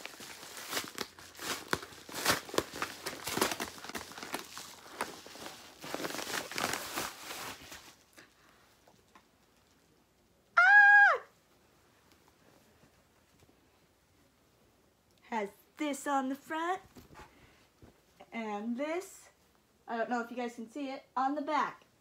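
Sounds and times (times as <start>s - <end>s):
package wrapping rustling and crackling: 0.0s - 9.9s.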